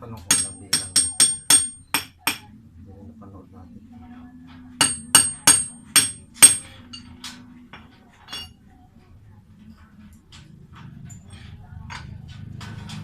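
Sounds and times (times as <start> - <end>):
hammer striking metal: 0.3 - 2.5, 4.8 - 7.1, 8.3 - 8.5.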